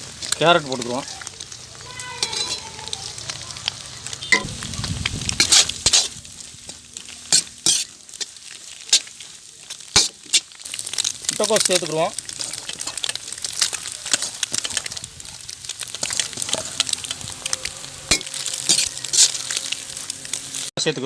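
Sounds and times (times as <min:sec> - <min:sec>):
vegetables sizzling in oil: 0:00.0 - 0:21.0
spatula scraping a pan: 0:02.0 - 0:02.9, 0:05.3 - 0:11.5, 0:15.9 - 0:20.4.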